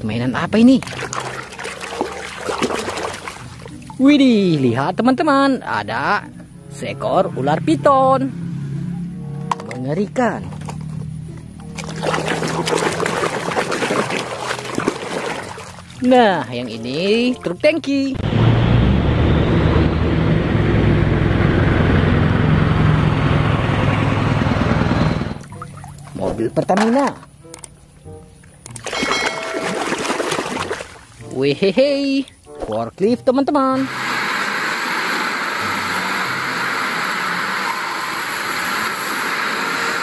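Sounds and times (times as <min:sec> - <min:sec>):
running water rushing: 0:00.7 - 0:04.7, 0:11.6 - 0:18.1, 0:28.4 - 0:31.6
motor running with hiss: 0:33.8 - 0:40.0.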